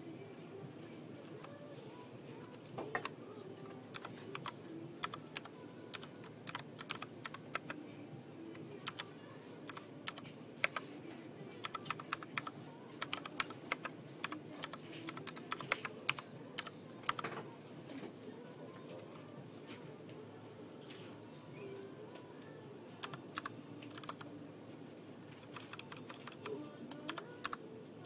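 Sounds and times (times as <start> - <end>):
mechanical keyboard key clicks: 23.0 - 24.2, 25.4 - 26.4.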